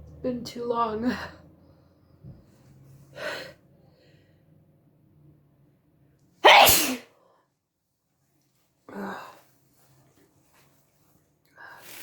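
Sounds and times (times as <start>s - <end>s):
woman breathing: 3.1s - 4.5s
woman sneezing loudly: 6.4s - 7.1s.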